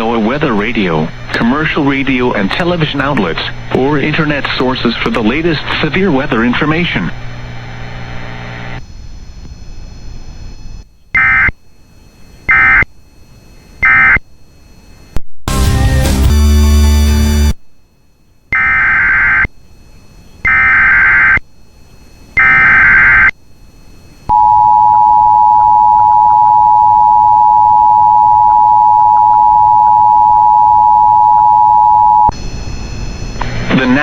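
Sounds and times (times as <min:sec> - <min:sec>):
buzzy digital data bursts: 0:00.0 - 0:15.0, 0:18.5 - 0:21.4, 0:22.0 - 0:23.9
two-tone attention signal: 0:24.3 - 0:32.3.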